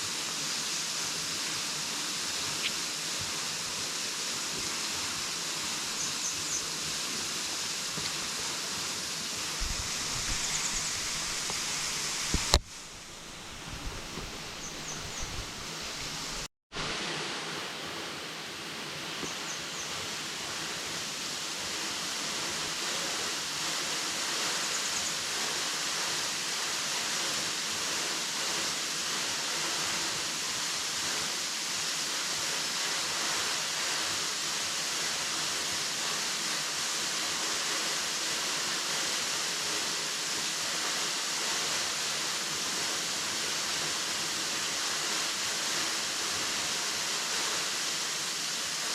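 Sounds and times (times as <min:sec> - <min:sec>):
waterfall rushing: 0:00.0 - 0:48.9.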